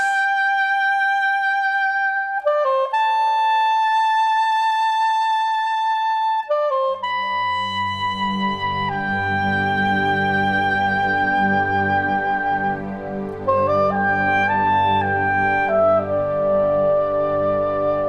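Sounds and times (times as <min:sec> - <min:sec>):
melody of long held notes: 0:00.0 - 0:18.0
low accompaniment: 0:06.4 - 0:18.0.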